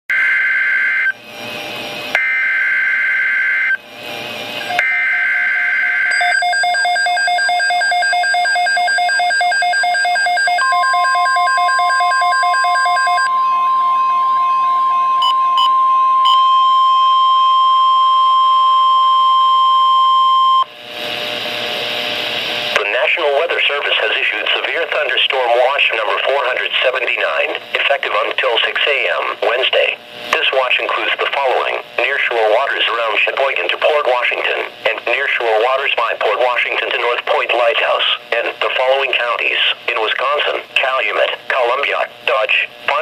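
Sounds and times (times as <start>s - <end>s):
steady warning alarm tone: 0.1s - 1.2s, 2.1s - 3.9s, 4.6s - 20.7s
electronic alarm beeping: 2.2s - 3.8s, 4.6s - 20.7s.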